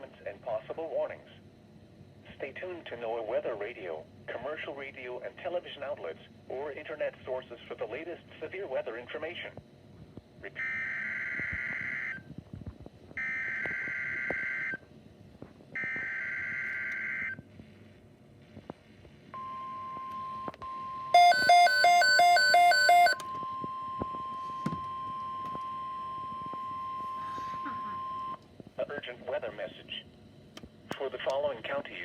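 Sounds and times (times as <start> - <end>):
steady alarm tone: 20.7 - 28.4
rapid electronic beeping: 21.2 - 23.2.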